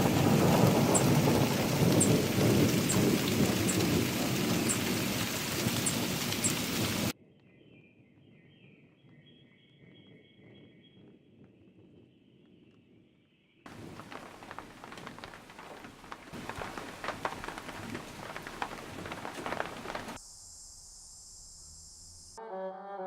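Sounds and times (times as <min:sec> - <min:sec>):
rumbling thunder: 0:00.0 - 0:07.1, 0:13.7 - 0:20.2
heavy rain: 0:00.0 - 0:07.2, 0:13.7 - 0:20.2.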